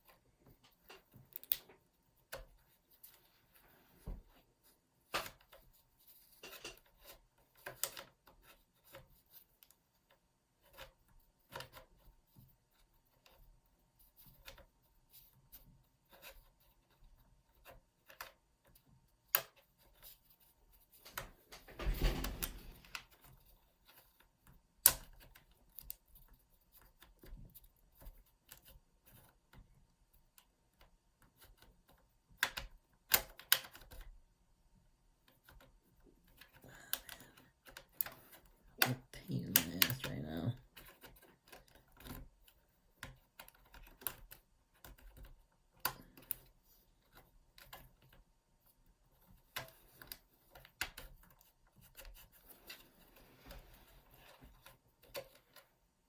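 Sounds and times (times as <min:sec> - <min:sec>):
small plastic clicks and taps: 0:00.0 - 0:02.6, 0:06.4 - 0:12.0, 0:17.6 - 0:20.1, 0:22.9 - 0:29.7, 0:30.3 - 0:34.1, 0:35.2 - 0:40.0, 0:40.6 - 0:48.2.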